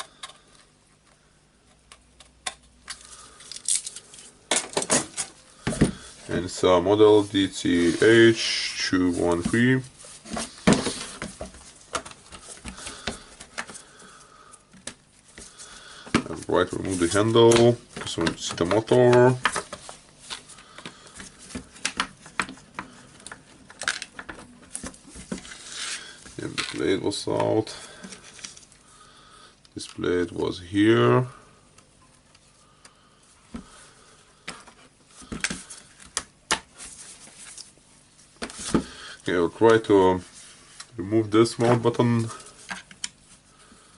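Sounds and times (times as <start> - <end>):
plastic parts clicking and knocking: 21.5 - 25.5.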